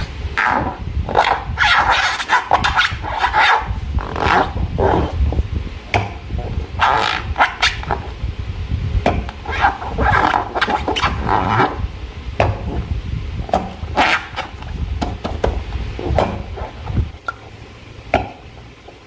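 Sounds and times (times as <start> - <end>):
low handling rumble: 0.0 - 19.0.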